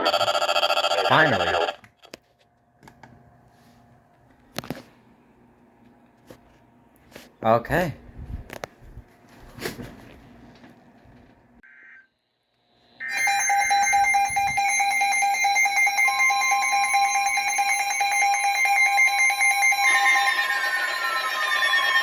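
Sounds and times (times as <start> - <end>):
rapidly pulsing electronic alarm: 0.0 - 2.1, 12.7 - 22.0
steady warning tone: 0.0 - 2.1, 11.7 - 22.0.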